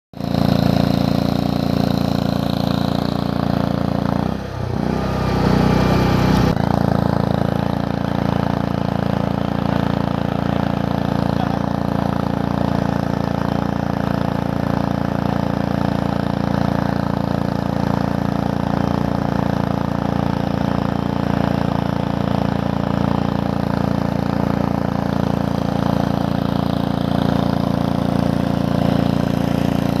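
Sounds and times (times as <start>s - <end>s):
engine idling: 0.2s - 30.0s.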